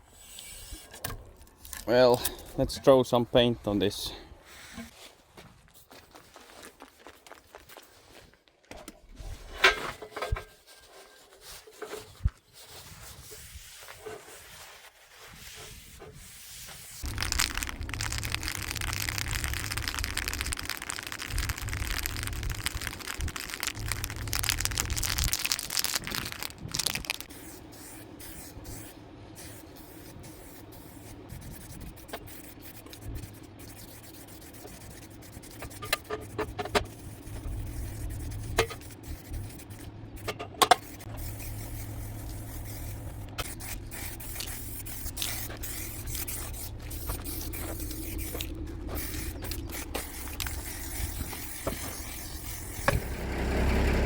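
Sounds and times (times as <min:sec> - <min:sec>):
spray paint hiss: 0:16.4 - 0:53.1.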